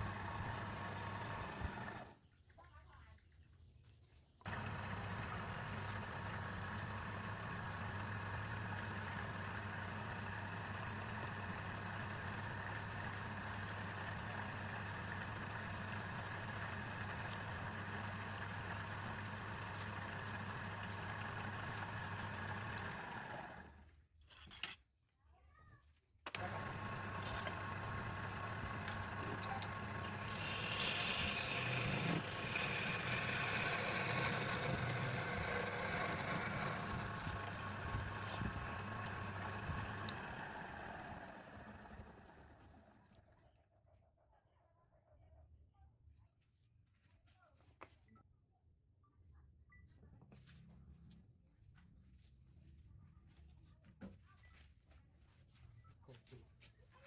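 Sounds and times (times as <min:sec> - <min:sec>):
lathe motor humming: 0:00.0 - 0:02.1, 0:04.5 - 0:23.8, 0:26.3 - 0:42.9.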